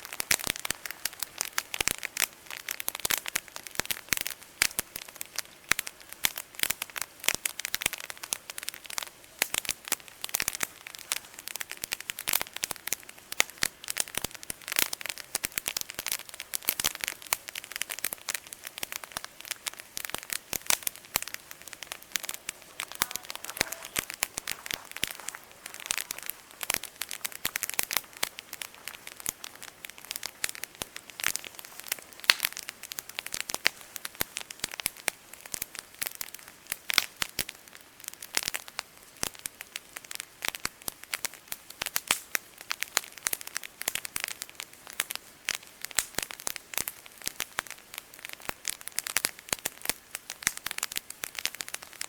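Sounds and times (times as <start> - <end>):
campfire crackling and popping: 0.0 - 52.0.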